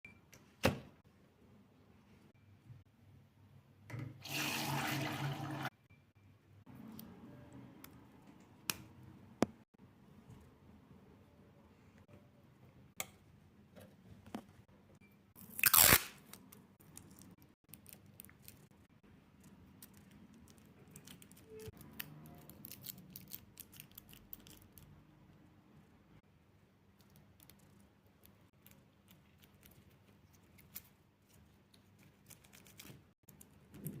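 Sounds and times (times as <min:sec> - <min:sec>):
crinkling craft materials: 0:15.4 - 0:25.5.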